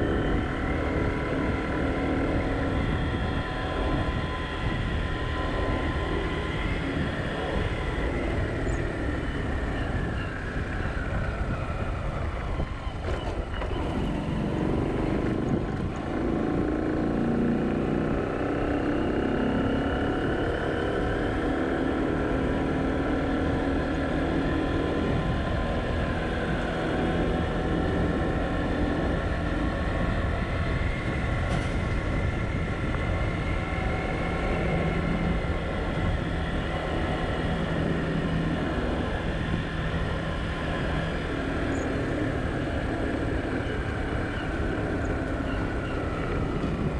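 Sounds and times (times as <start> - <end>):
road noise: 0.0 - 46.9
vehicle engine running: 0.0 - 46.9.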